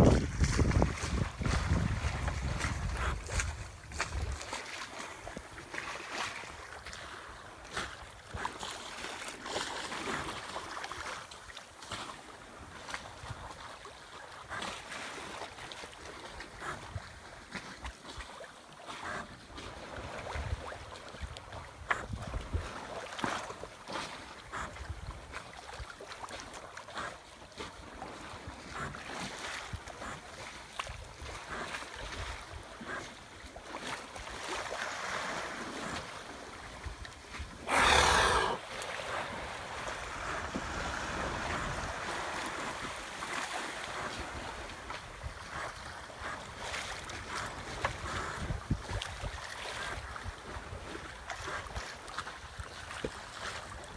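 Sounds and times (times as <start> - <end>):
wind gusting over microphone: 0.0 - 4.4
water splashing against hull: 0.0 - 12.2, 12.8 - 53.9.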